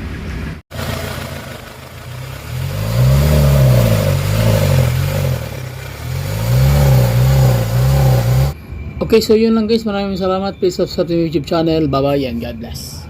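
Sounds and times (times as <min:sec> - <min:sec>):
diesel engine revving: 0:00.4 - 0:08.6.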